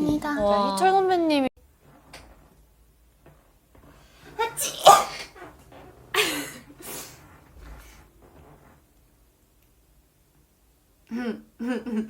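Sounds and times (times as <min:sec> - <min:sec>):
woman sneezing: 0:04.4 - 0:05.4.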